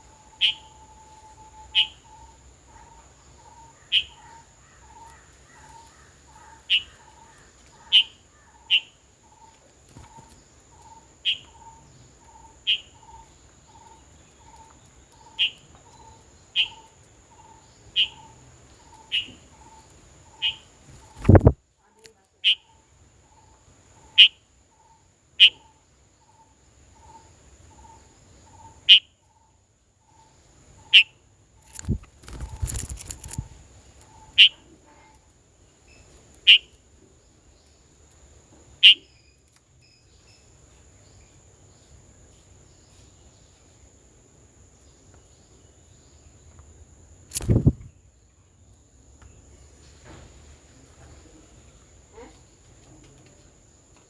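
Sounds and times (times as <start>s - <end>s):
sharp bird calls: 0.2s - 21.6s, 24.0s - 26.4s, 30.8s - 34.7s, 36.4s - 36.8s, 38.8s - 39.3s, 47.3s - 47.9s
rustling or flapping: 20.9s - 21.6s, 31.6s - 33.6s, 47.3s - 47.9s.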